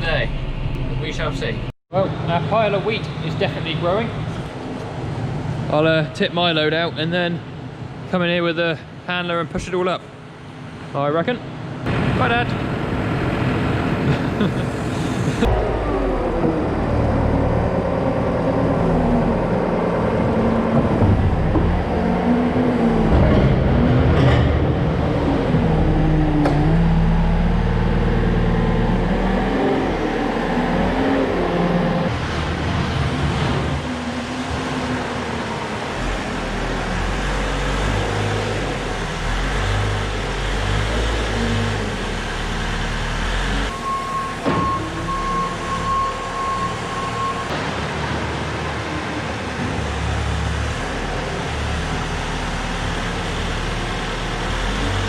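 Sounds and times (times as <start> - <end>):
high beeping tone: 43.7 - 47.5.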